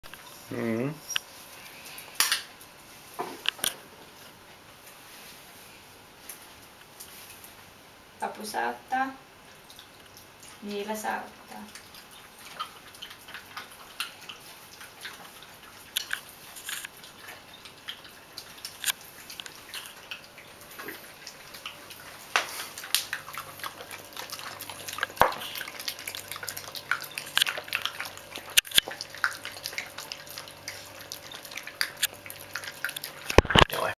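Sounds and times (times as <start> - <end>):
dogs crunching dry kibble: 11.6 - 33.9.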